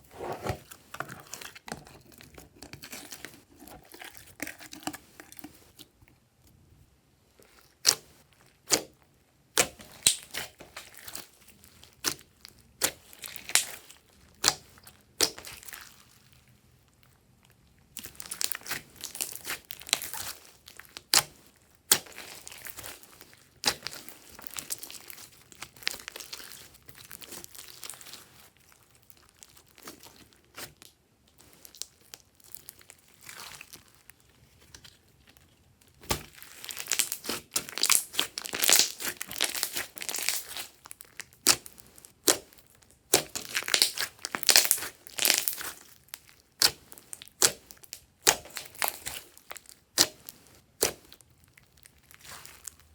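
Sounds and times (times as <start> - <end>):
slime popping and squelching: 7.8 - 16.0, 18.0 - 28.2, 35.9 - 52.9.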